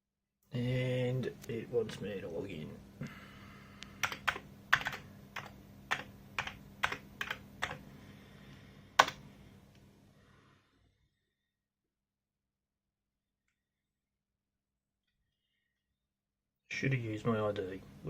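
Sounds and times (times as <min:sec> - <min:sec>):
faint steady hum: 0:00.5 - 0:11.5, 0:16.7 - 0:18.0
keyboard typing: 0:03.9 - 0:07.9, 0:09.0 - 0:09.2.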